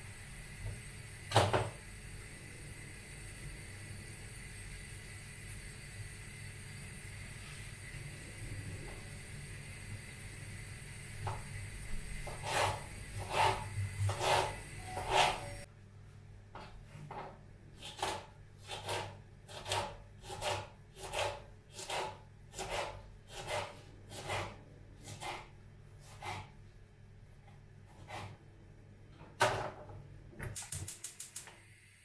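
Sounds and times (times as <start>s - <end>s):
rhythmic scraping strokes: 12.3s - 15.7s.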